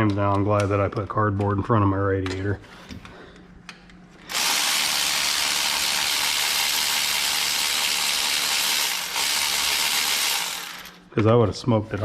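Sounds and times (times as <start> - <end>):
ratchet spinning: 4.3 - 11.0.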